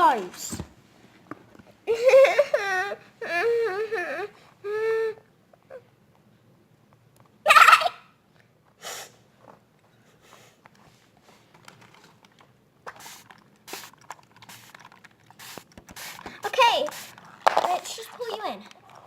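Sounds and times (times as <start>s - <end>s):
toy figures clicking and rustling: 11.4s - 19.0s.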